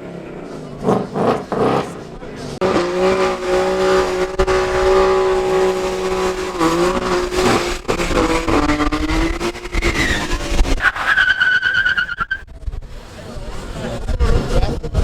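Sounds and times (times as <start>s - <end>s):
car engine revving high: 0.0s - 15.0s
high steady squeal: 3.6s - 12.5s.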